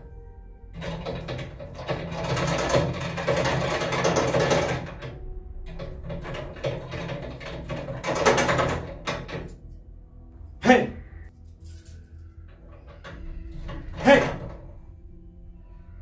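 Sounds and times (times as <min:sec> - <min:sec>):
padlock rattling: 0:00.7 - 0:09.9.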